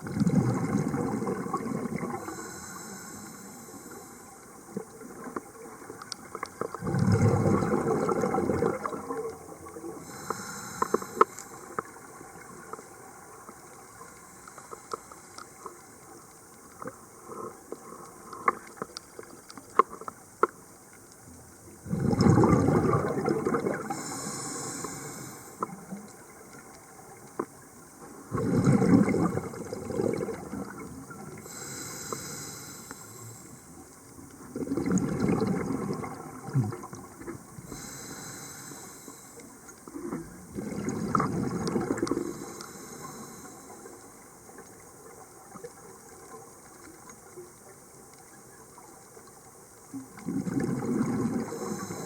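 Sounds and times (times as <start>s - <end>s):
bubbles from diver exhaling: 0.0s - 2.3s, 6.8s - 9.3s, 21.8s - 24.1s, 28.3s - 31.1s, 34.6s - 37.0s, 40.0s - 42.3s, 50.2s - 51.8s
regulator inhalation hiss: 2.2s - 4.4s, 10.0s - 11.8s, 23.9s - 25.7s, 31.4s - 33.8s, 37.7s - 39.6s, 42.2s - 44.0s, 51.5s - 52.0s.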